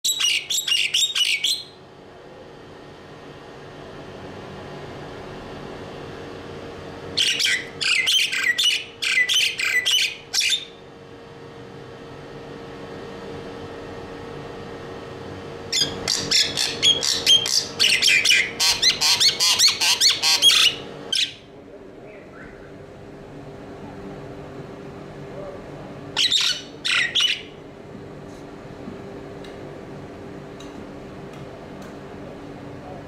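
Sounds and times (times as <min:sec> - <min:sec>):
birds squawking harshly: 0:00.1 - 0:01.8, 0:07.2 - 0:10.8, 0:15.7 - 0:21.5, 0:26.2 - 0:27.6
steady low hum: 0:00.1 - 0:33.0.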